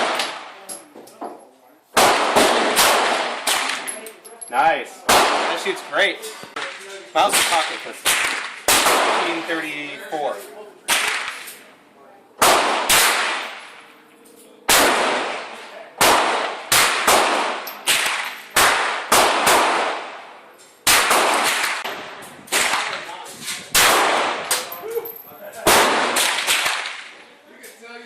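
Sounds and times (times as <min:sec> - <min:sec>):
pistol shots echoing: 0:00.0 - 0:00.5, 0:02.0 - 0:03.9, 0:05.1 - 0:05.8, 0:06.6 - 0:09.6, 0:12.4 - 0:13.8, 0:14.7 - 0:23.1, 0:23.8 - 0:24.7, 0:25.6 - 0:27.1.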